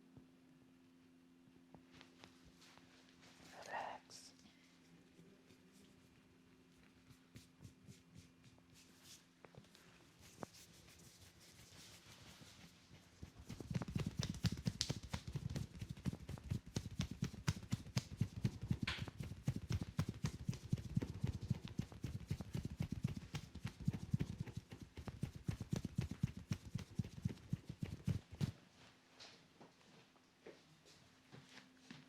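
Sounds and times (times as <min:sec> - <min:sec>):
hands tapping and slapping: 0:07.0 - 0:28.5.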